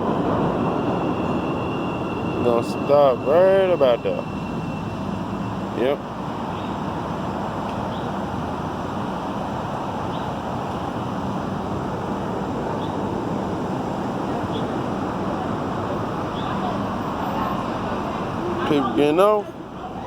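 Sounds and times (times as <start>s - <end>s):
train rumbling hum: 0.0s - 20.0s.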